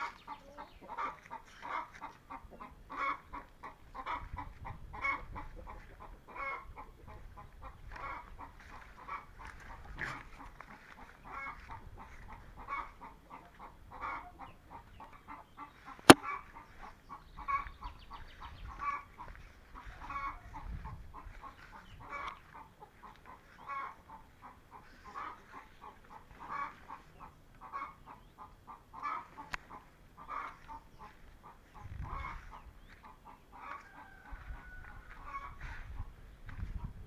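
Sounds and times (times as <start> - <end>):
chickens clucking: 0.3 - 2.8.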